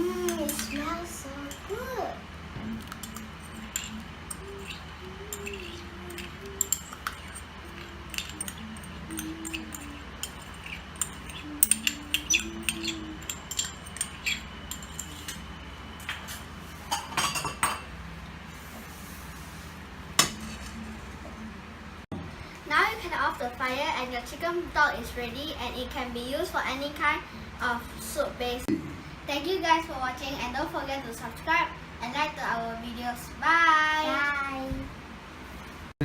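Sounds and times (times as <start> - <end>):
spoon stirring in metal pot: 2.8 - 16.1.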